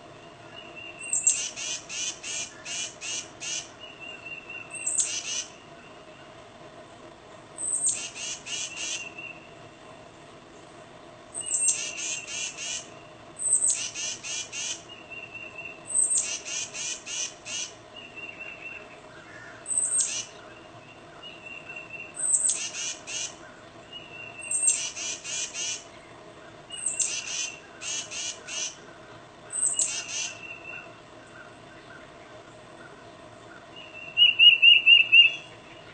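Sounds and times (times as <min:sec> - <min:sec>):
titmouse calling: 0:00.6 - 0:05.6, 0:07.6 - 0:09.4, 0:11.4 - 0:18.8, 0:19.6 - 0:20.4, 0:21.5 - 0:23.4, 0:24.0 - 0:25.9, 0:26.7 - 0:28.8, 0:29.5 - 0:30.9.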